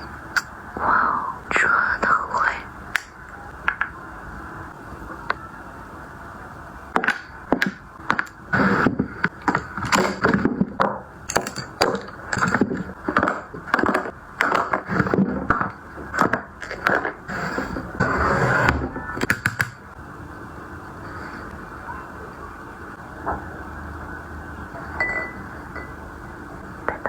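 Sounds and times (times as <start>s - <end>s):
low background hum: 0.0s - 27.0s
hard objects clicking and knocking: 6.9s - 17.8s, 18.6s - 19.8s.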